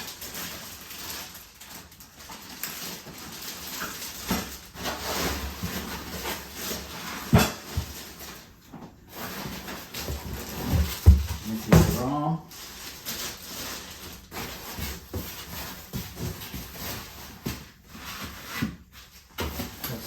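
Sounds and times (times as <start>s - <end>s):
packaging rustling: 0.0s - 20.0s
chair parts knocking: 10.6s - 12.0s.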